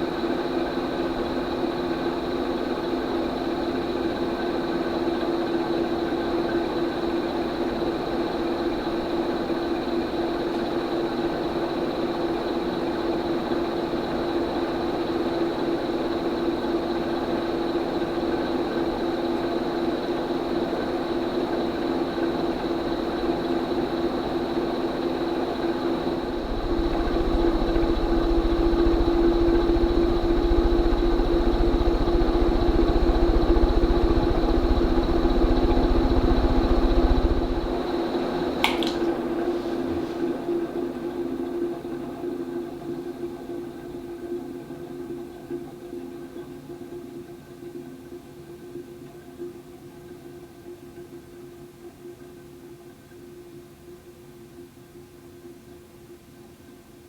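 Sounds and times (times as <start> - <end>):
ceiling fan motor hum: 21.8 - 41.5.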